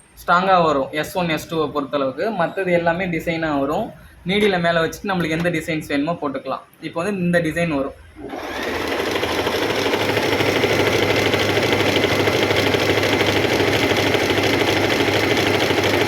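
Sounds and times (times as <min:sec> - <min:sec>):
sewing machine running: 0:08.2 - 0:16.0.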